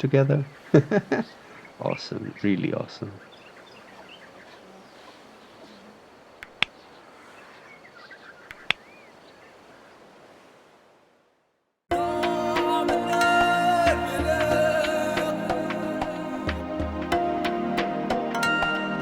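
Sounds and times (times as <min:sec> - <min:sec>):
riverside ambience: 0:00.0 - 0:10.4, 0:11.9 - 0:19.0
faint bird chirps: 0:00.4 - 0:10.1
sharp clicks: 0:06.4 - 0:06.8
music: 0:11.9 - 0:19.0.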